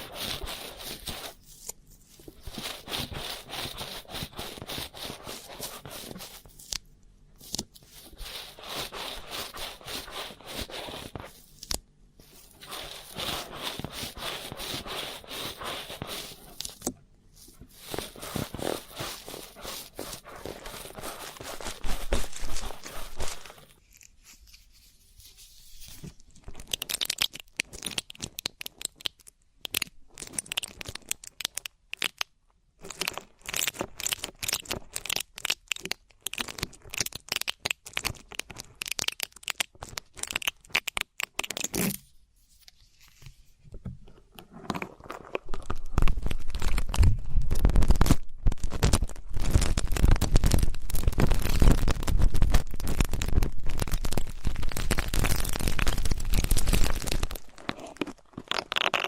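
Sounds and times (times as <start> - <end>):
ear pick scratching: 2.1 - 6.6, 7.8 - 11.6, 12.2 - 24.2.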